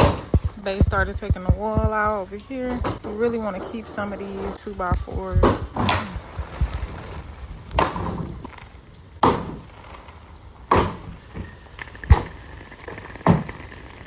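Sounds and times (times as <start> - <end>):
heavy knocks on wooden framing: 0.0 - 3.7, 9.2 - 11.5.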